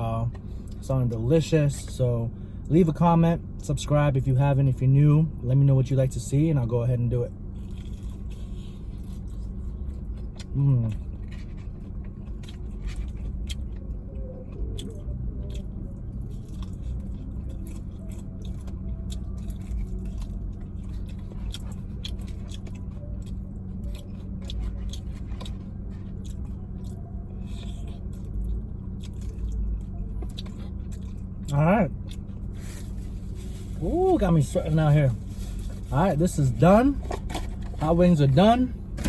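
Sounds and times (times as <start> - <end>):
low hum inside a car: 0.0 - 39.0
person chewing food: 7.6 - 33.7.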